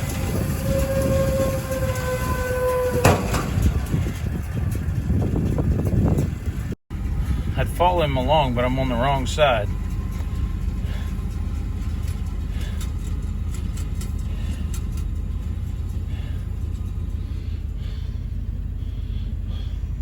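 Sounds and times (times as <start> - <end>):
vehicle engine rumble: 0.0 - 20.0
light rattles and clicks: 8.2 - 19.0.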